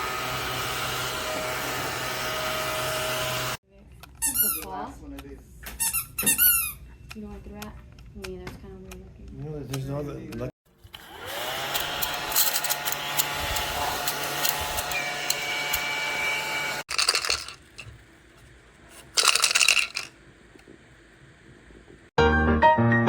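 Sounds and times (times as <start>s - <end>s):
vacuum cleaner motor whine: 0.0s - 3.6s, 10.9s - 16.9s
rattling clicks: 16.9s - 18.0s, 18.9s - 20.1s.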